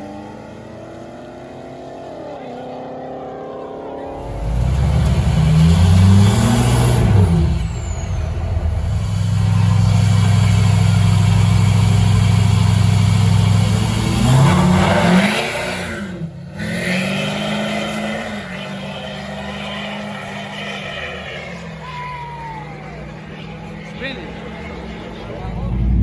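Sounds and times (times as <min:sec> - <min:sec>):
engine revving hard: 0:00.0 - 0:11.0, 0:13.4 - 0:21.6.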